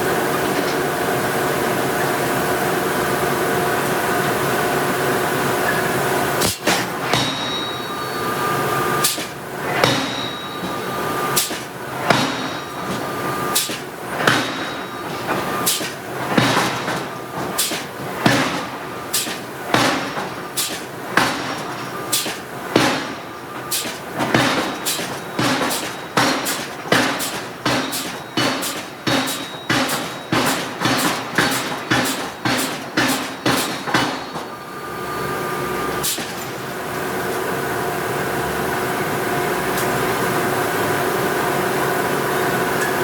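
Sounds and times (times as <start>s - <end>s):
forging hammer striking steel: 6.4s - 34.7s
thin metallic ringing tone: 7.2s - 9.0s, 10.1s - 11.3s.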